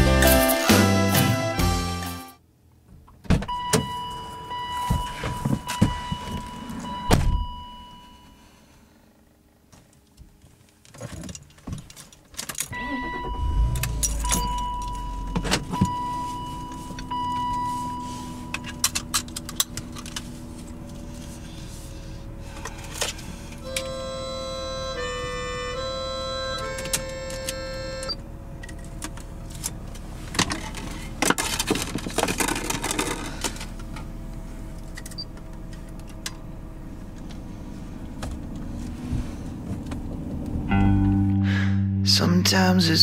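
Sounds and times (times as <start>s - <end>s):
engine rumbling hum: 0.0s - 43.0s
chime tone: 12.8s - 16.8s.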